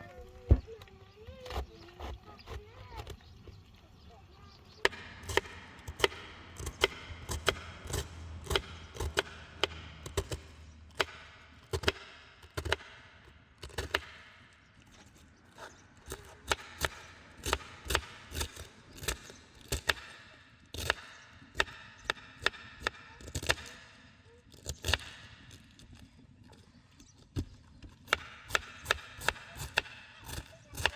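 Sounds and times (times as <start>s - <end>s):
knife chopping vegetables: 4.8s - 11.2s, 11.8s - 12.9s, 28.0s - 30.9s.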